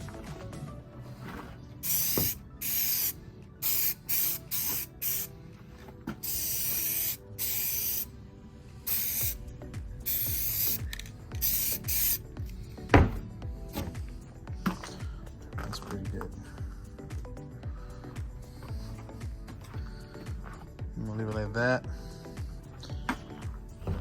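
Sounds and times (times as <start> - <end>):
spray paint can hissing: 1.8 - 5.3, 6.2 - 8.1, 8.8 - 12.5.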